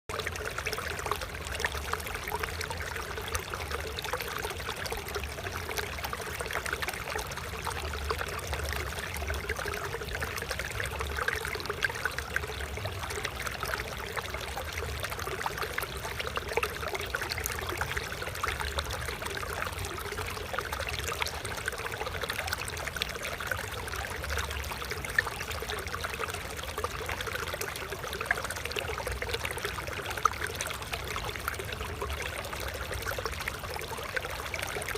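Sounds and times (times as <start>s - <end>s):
water trickling and splashing: 0.1s - 34.9s.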